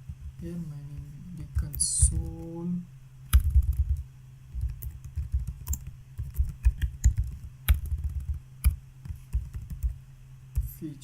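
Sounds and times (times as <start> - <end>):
steady low hum: 0.0 - 11.0
keyboard typing: 3.3 - 10.0.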